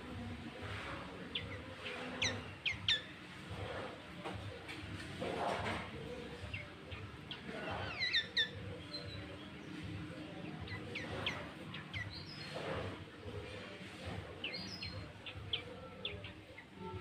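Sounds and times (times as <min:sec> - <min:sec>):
bird singing whistled notes: 0:02.2 - 0:03.1.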